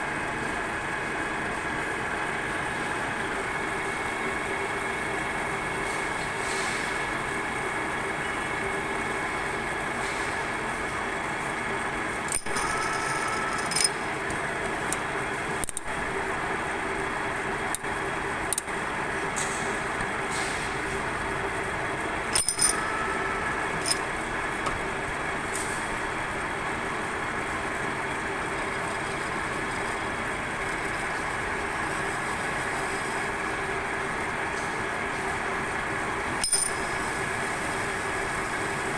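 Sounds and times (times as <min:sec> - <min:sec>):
metal lathe humming: 0:11.0 - 0:20.2, 0:20.8 - 0:25.4
short metallic clinks: 0:12.3 - 0:14.0, 0:22.2 - 0:23.2, 0:23.8 - 0:24.1, 0:36.4 - 0:37.1.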